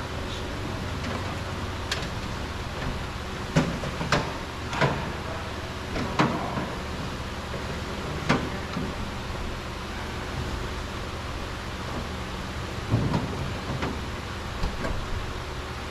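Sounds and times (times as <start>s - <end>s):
steady low background hum: 0.0s - 15.9s.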